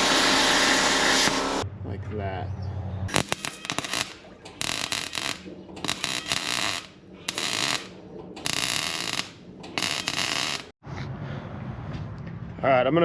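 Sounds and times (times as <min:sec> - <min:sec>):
welding arc crackling: 0:00.0 - 0:01.6, 0:03.1 - 0:10.8.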